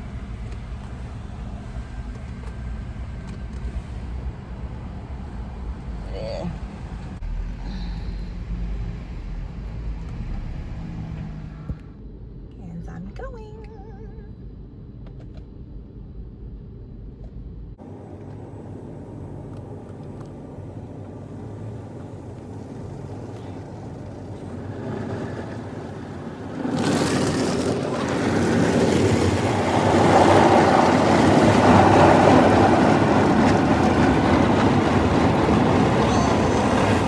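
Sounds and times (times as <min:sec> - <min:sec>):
car wash rushing: 0:18.5 - 0:37.0.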